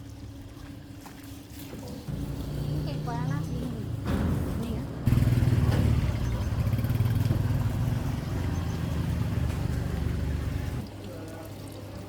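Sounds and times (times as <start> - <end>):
small engine humming: 5.0 - 10.8.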